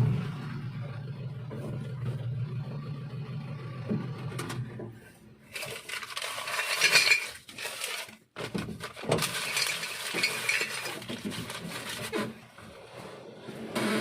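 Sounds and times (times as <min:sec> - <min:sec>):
vehicle engine humming: 0:00.0 - 0:05.5
hard objects clattering: 0:05.5 - 0:12.6.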